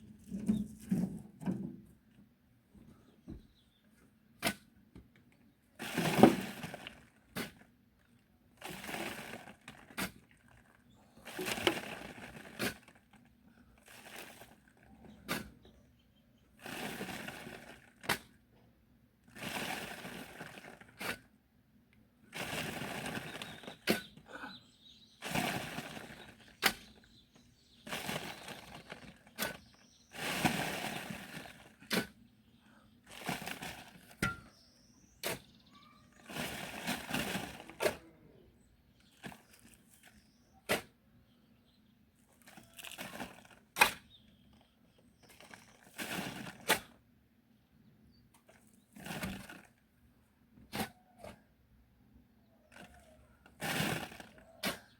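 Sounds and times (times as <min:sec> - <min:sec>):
digging tool scraping soil: 0:05.8 - 0:07.7, 0:08.6 - 0:15.7, 0:16.6 - 0:18.4, 0:19.3 - 0:21.4, 0:22.3 - 0:24.2, 0:25.0 - 0:32.3, 0:33.1 - 0:38.1, 0:39.0 - 0:41.0, 0:42.4 - 0:44.5, 0:45.2 - 0:47.0, 0:50.7 - 0:51.4, 0:52.7 - 0:54.9.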